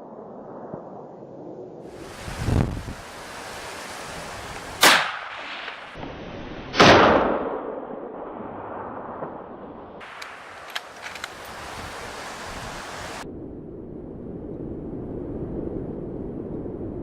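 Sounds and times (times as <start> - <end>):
wind noise: 0.0 - 6.6, 10.0 - 17.0
loud gunshots with echo: 4.8 - 6.0.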